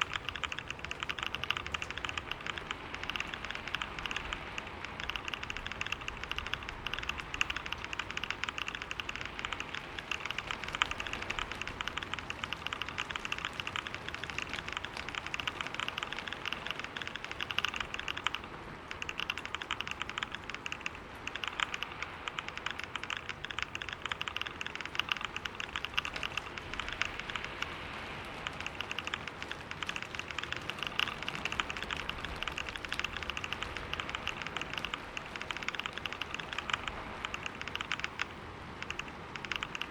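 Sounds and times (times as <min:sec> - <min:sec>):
fast keyboard typing: 0:00.0 - 0:39.9.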